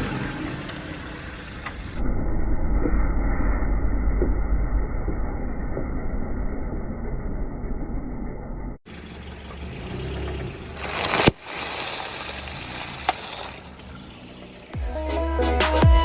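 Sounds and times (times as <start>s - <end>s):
car engine running: 0.0s - 2.0s, 4.1s - 15.0s
object crushed under tyre: 10.7s - 14.1s.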